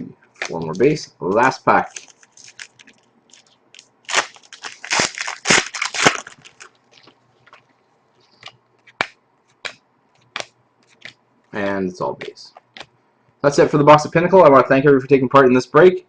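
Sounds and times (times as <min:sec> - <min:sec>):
wrapper tearing and crinkling: 0:01.9 - 0:07.6.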